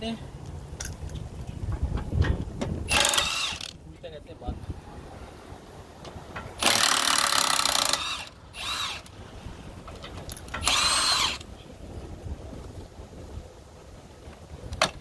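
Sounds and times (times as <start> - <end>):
impact driver spinning off nuts: 2.9 - 3.8, 6.6 - 9.1, 10.5 - 11.5.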